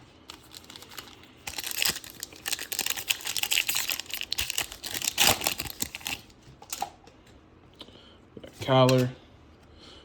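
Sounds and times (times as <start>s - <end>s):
foil wrapper crinkling and tearing: 0.3s - 6.9s.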